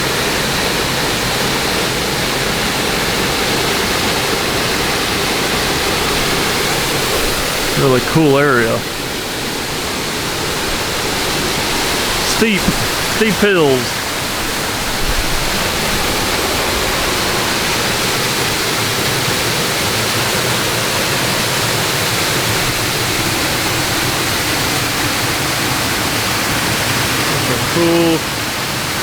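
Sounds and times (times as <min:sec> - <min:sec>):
waterfall rushing: 0:00.0 - 0:29.0.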